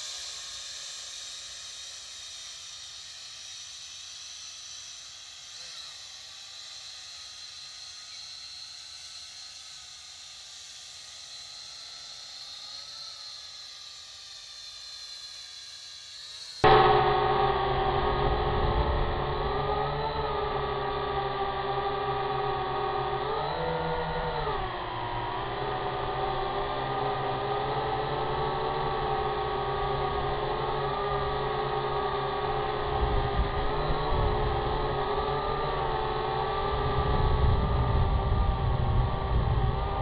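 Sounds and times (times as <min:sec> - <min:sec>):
quadcopter motors whining: 0:00.0 - 0:40.0
low rumbling noise: 0:29.3 - 0:40.0.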